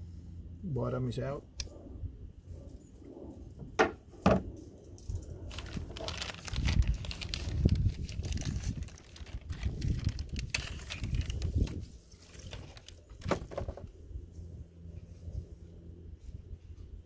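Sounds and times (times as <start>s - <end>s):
rustling handling noise: 4.4s - 14.5s.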